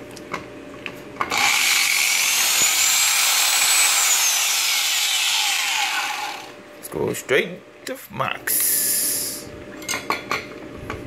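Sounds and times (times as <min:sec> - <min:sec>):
angle grinder high whine: 0:01.3 - 0:06.6.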